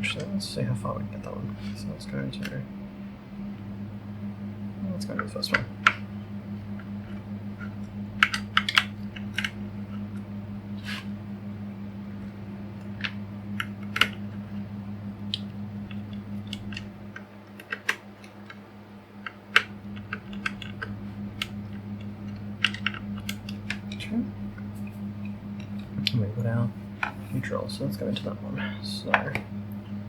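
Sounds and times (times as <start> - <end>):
room fan humming: 0.0 - 30.0
wires clicking into connectors: 6.8 - 11.1, 12.8 - 27.3.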